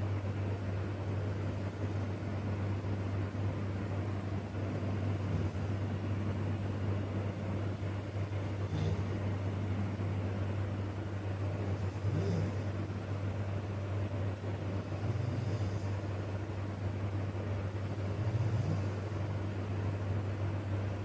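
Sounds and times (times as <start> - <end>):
steady low hum: 0.0 - 21.0
man snoring: 4.7 - 5.8, 8.6 - 9.4, 11.6 - 12.8, 14.7 - 16.0, 18.0 - 19.4.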